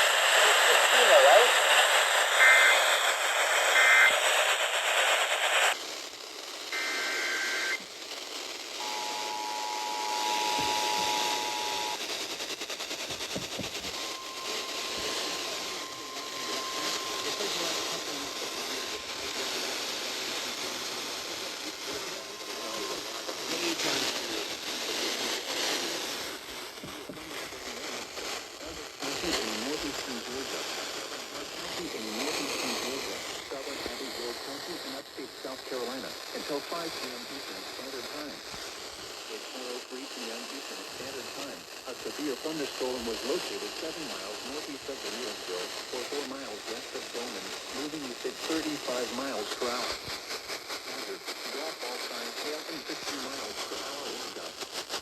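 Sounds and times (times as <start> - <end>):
warbling data bursts: 0.0 - 5.8, 8.8 - 26.2
radio static: 0.0 - 55.0
single-tone warning alarm: 6.8 - 7.8, 8.8 - 12.0, 13.8 - 19.4
two-tone attention signal: 8.8 - 12.0, 13.9 - 19.1.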